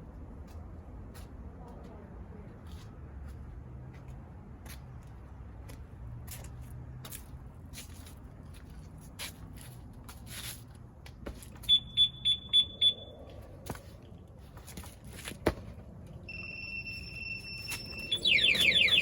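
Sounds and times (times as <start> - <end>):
quick high alarm beeps: 11.6 - 13.2, 16.3 - 19.0
alarm clicks: 16.3 - 19.0
steady high electronic tone: 16.3 - 19.0
warbling alarm siren: 16.3 - 19.0.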